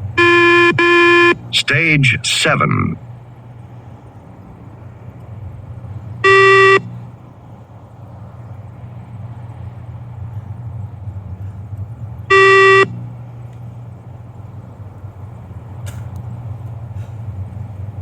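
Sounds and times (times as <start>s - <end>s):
steady low hum: 0.0s - 18.0s
electronic beeps: 0.2s - 1.4s, 6.2s - 6.8s, 12.3s - 12.9s.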